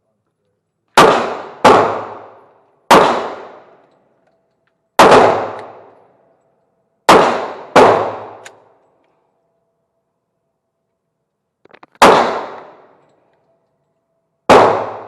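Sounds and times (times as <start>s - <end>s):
gunshots: 1.0s - 3.8s, 5.0s - 5.9s, 7.1s - 8.5s, 11.7s - 13.0s, 14.5s - 15.0s.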